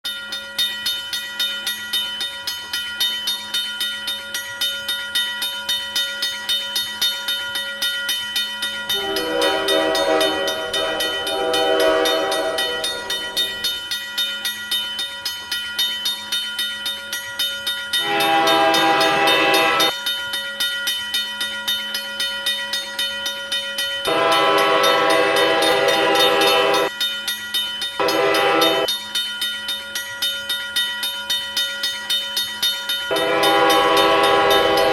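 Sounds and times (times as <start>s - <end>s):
railroad crossing bell ringing: 0.0s - 34.9s
train horn blasts: 9.0s - 13.6s, 18.0s - 19.9s, 24.1s - 26.9s, 28.0s - 28.9s, 33.1s - 34.9s.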